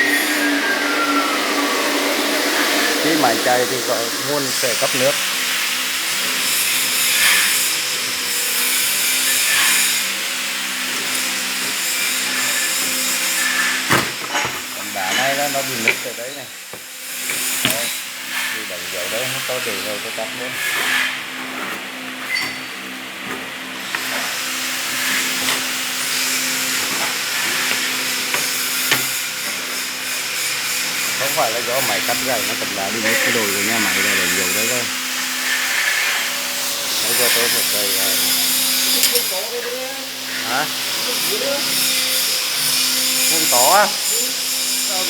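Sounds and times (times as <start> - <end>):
stone-cutting saw hissing: 0.0 - 45.0
water running onto blade: 12.1 - 18.4, 23.8 - 29.9, 31.1 - 34.9.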